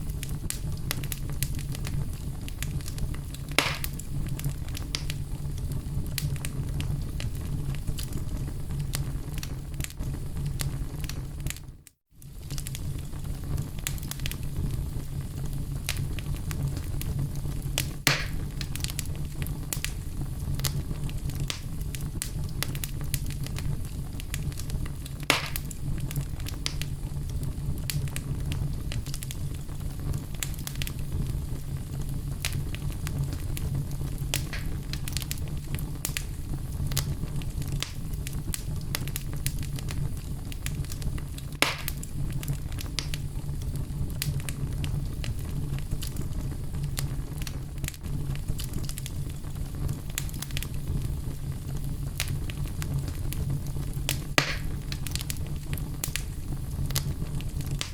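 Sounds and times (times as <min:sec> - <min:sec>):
fire popping loudly: 0:00.0 - 0:57.9
wood fire crackling: 0:00.0 - 0:57.9.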